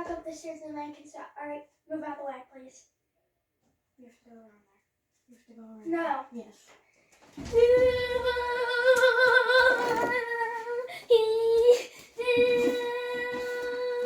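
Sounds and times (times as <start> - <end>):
girl singing long notes: 7.5 - 14.0.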